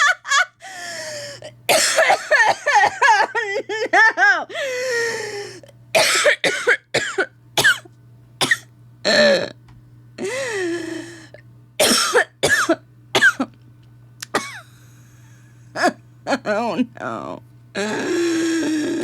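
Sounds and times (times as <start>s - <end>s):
person laughing hard: 0.0s - 1.0s, 2.2s - 5.3s.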